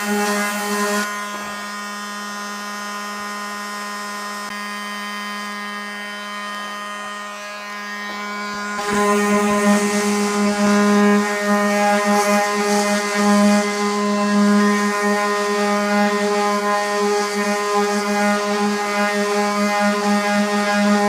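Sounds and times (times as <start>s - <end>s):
oscillating multi-tool sanding: 0.0s - 21.0s.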